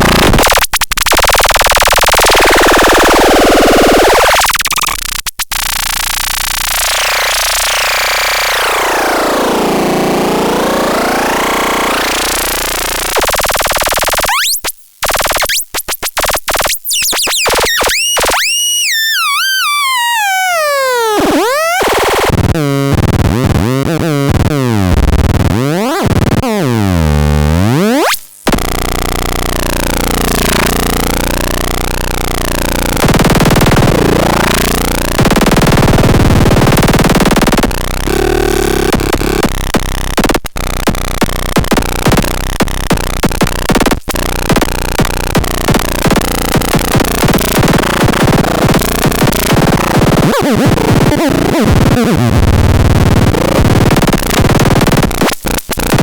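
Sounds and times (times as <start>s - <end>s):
buzzing synthesizer pitch sweeps: 5.5s - 15.6s, 16.2s - 56.0s.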